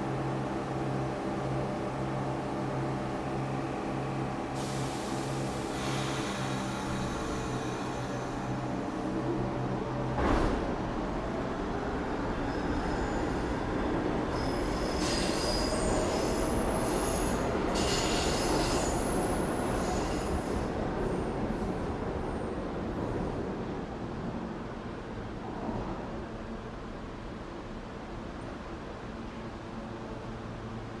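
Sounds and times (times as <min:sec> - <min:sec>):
subway train rumbling: 0:00.0 - 0:31.0
wheels squealing on rails: 0:04.6 - 0:21.9
loud clunk: 0:10.0 - 0:12.5.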